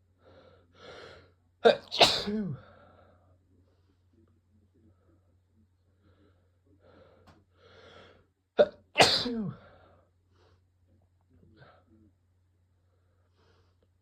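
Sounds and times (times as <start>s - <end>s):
man sneezing: 1.6s - 2.7s, 8.6s - 9.7s.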